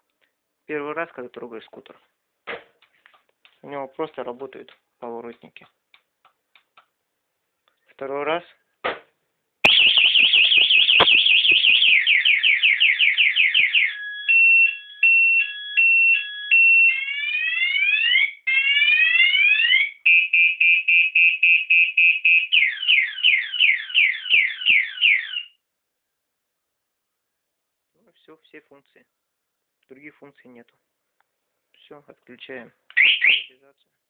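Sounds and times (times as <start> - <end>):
scooter alarm siren cycling tones: 9.7 - 25.6, 33.0 - 33.5.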